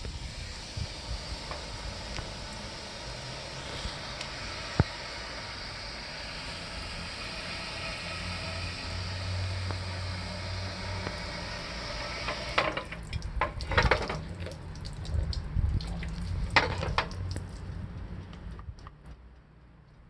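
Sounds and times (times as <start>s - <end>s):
water running with low hum: 0.0s - 18.4s
water splashes and knocks: 12.3s - 17.7s.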